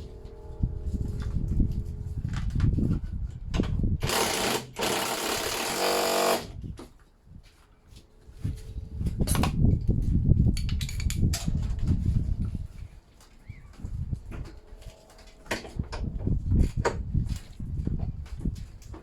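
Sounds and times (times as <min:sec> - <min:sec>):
power tool bursts: 0:04.0 - 0:06.6.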